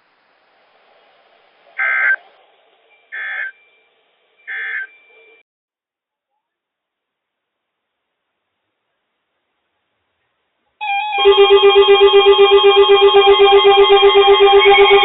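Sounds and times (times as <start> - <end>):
faint radio hiss: 0.0 - 5.4, 6.1 - 10.8
buzzy digital warbles: 11.2 - 15.0.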